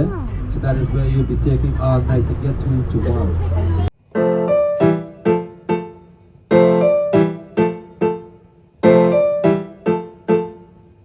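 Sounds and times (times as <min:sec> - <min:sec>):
piano chords: 0:03.9 - 0:11.0.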